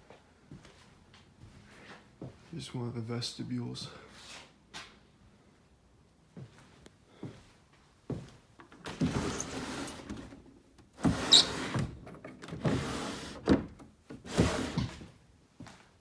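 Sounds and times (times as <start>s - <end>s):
door scraping and creaking: 8.7s - 15.0s
short high squeak: 11.2s - 11.6s.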